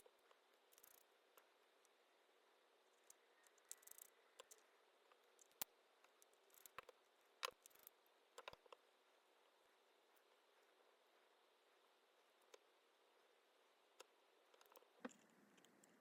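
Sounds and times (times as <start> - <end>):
small tools clicking and scraping: 0.0 - 1.5, 2.9 - 8.8, 14.5 - 16.0.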